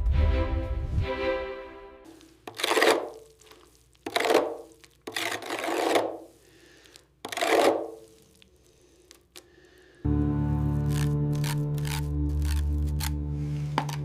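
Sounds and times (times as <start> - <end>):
abrasive hand scraping: 2.1 - 8.9.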